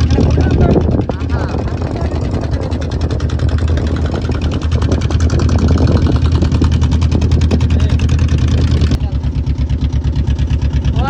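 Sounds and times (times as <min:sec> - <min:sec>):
motorboat engine chugging: 0:00.0 - 0:11.0.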